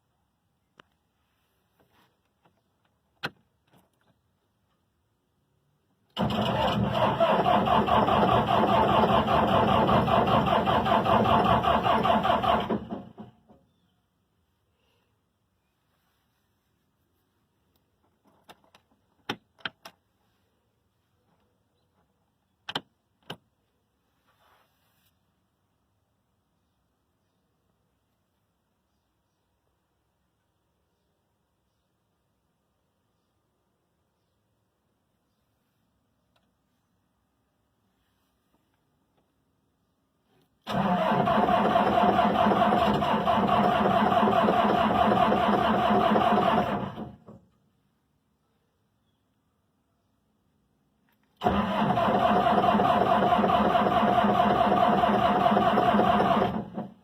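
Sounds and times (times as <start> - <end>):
brief faint hiss: 24.1 - 25.3.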